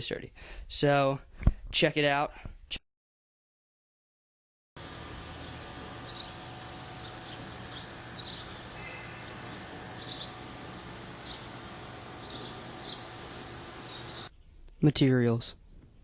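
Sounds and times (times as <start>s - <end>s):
low hum: 4.8s - 14.6s
background hiss: 4.8s - 16.0s
high bird chirps: 5.4s - 10.5s, 11.1s - 13.2s, 13.8s - 14.3s.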